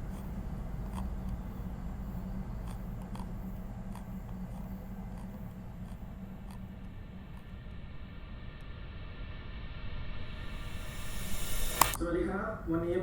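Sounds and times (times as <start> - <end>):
light irregular clicks: 0.0 - 7.7
steady low hum: 0.0 - 13.0.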